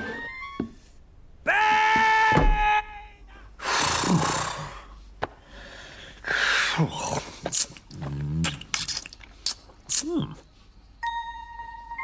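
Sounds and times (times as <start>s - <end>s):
breathy sneeze-like exclamation: 9.9s - 10.4s.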